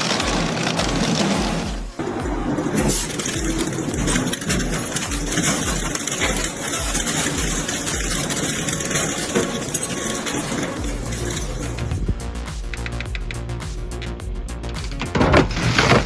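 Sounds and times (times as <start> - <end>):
industrial shredder running: 0.0 - 12.1.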